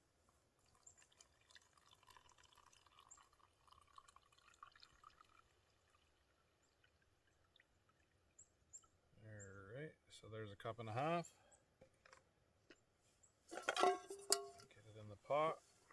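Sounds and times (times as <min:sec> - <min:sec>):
water pouring into a cup: 0:00.6 - 0:09.0.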